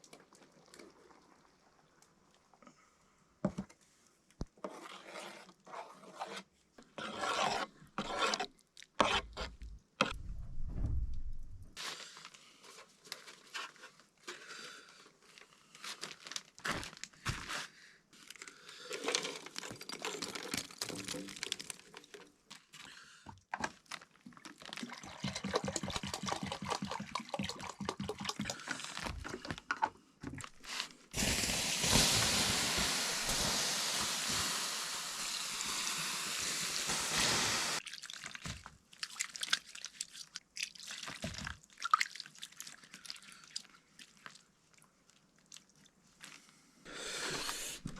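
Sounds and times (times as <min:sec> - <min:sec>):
low rumble: 0:10.2 - 0:11.8
steady hiss: 0:31.2 - 0:37.8.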